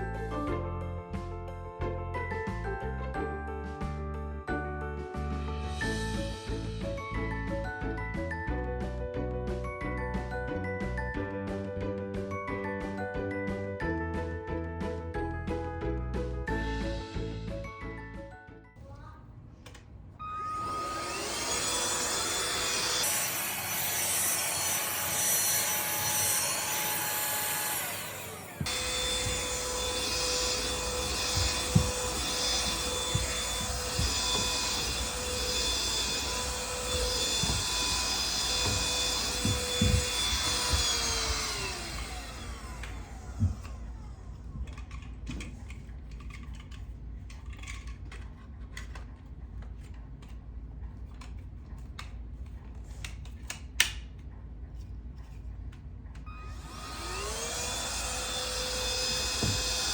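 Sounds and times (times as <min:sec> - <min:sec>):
handheld vacuum whining: 0:20.2 - 0:46.7, 0:56.2 - 0:59.9
knocks: 0:28.6 - 0:41.6
light clicks and handling sounds: 0:42.5 - 0:56.3.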